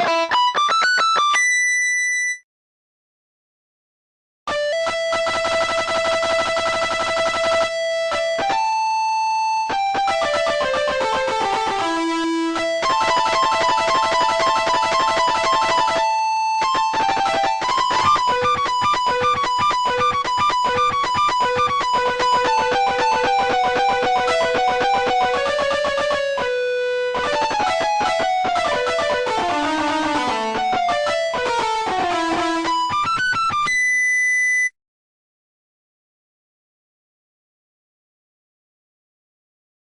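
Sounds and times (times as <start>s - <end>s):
guitar fast melodic run: 0.0s - 1.8s, 4.5s - 8.9s, 9.7s - 34.1s.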